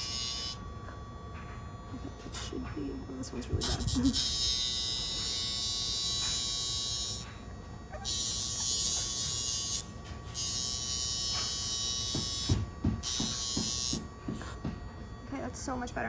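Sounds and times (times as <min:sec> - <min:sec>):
electric nail grinder whirring: 0:00.0 - 0:16.0.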